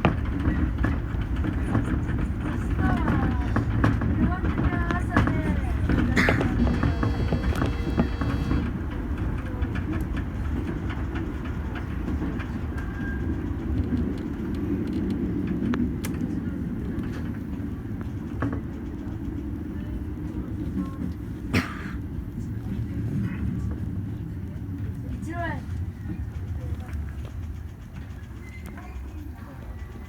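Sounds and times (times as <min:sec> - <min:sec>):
subway train rumbling on rails: 0:00.0 - 0:30.0
thin high whine: 0:06.3 - 0:08.7.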